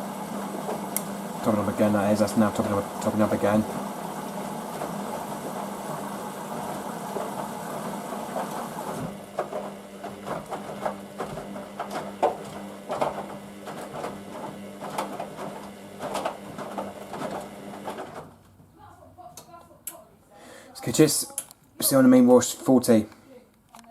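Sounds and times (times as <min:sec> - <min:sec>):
washing machine filling with water: 0:00.0 - 0:18.3
washing machine clicks and knocks: 0:08.3 - 0:18.3.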